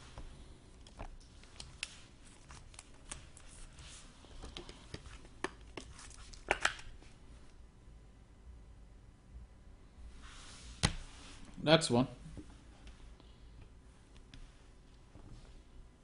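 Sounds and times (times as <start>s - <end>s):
trading cards rustling: 0.8s - 4.0s.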